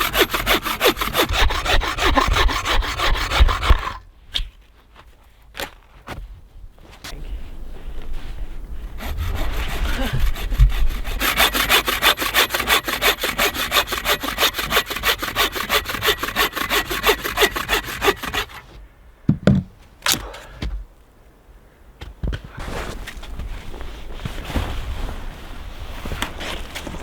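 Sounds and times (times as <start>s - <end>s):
hand saw cutting wood: 0.0s - 4.1s, 8.9s - 18.8s
short knocks: 19.3s - 19.8s.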